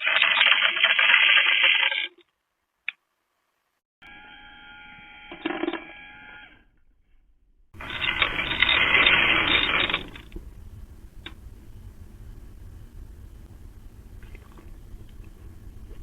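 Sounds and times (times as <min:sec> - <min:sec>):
short clatter: 0:07.8 - 0:10.6
dispenser rattling whir: 0:07.8 - 0:16.0.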